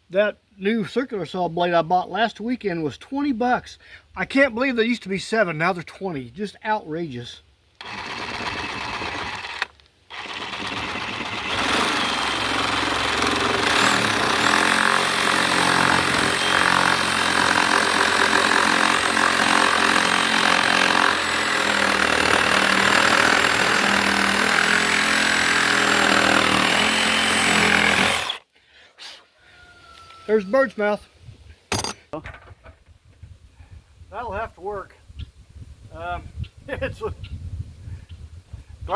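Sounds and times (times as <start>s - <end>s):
reciprocating saw cutting wood: 7.8s - 28.4s.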